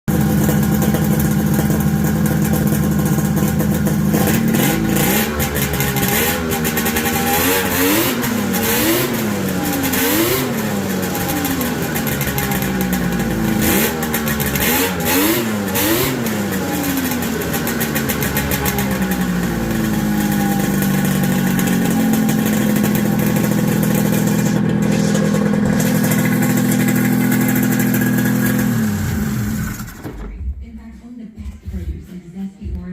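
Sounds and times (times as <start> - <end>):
snowmobile engine revving: 4.0 - 30.0.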